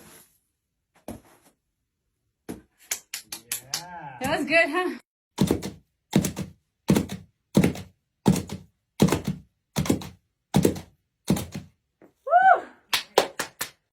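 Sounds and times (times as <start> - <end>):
repeated thuds: 5.4 - 11.8.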